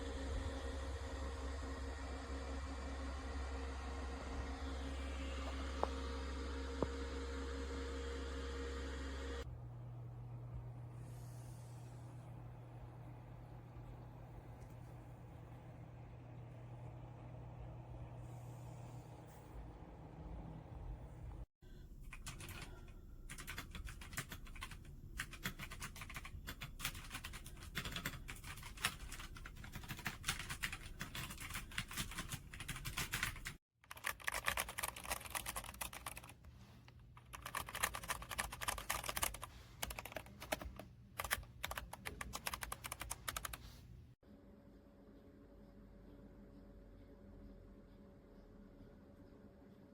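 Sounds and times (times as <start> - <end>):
mechanical keyboard typing: 22.1 - 36.4, 37.2 - 43.6.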